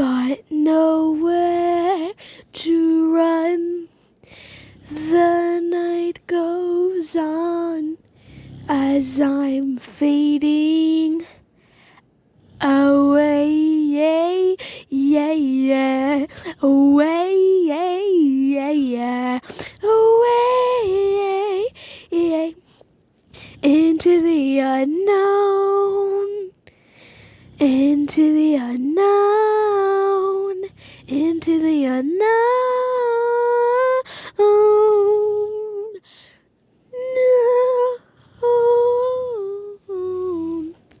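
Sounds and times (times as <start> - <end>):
breaths: 2.1 - 2.6, 3.9 - 5.0, 8.0 - 8.8, 11.2 - 12.8, 14.6 - 14.9, 19.4 - 19.8, 21.7 - 23.6, 26.6 - 27.7, 30.6 - 31.2, 34.0 - 34.4, 36.0 - 36.7.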